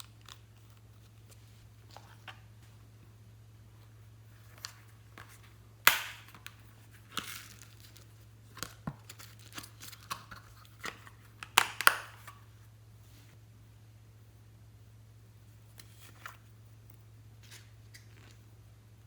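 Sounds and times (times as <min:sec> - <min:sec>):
faint low hum: 0:00.0 - 0:19.0
slime popping and crackling: 0:05.8 - 0:10.2.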